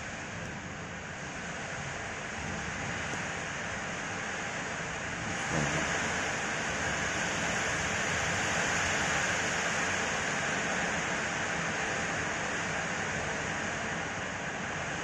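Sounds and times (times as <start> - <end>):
heavy rain pouring: 5.2 - 9.3.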